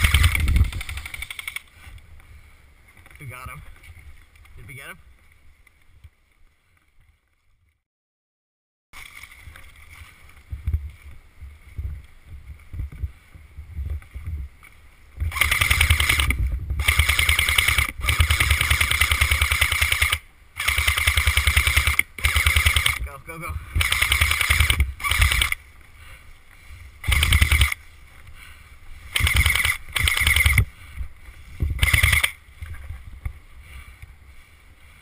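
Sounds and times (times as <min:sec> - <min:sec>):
airsoft gun full-auto bursts: 0:00.0 - 0:01.6, 0:15.3 - 0:23.0, 0:23.8 - 0:25.6, 0:27.0 - 0:27.8, 0:29.1 - 0:30.7, 0:31.8 - 0:32.4.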